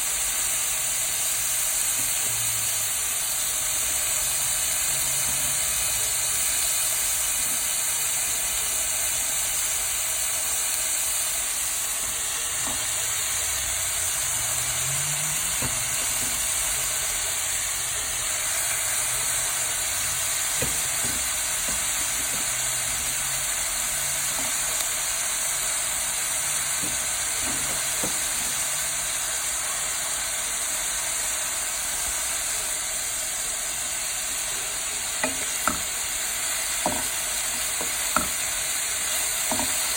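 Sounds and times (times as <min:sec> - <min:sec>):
vegetables sizzling in a pan: 0:00.0 - 0:39.9.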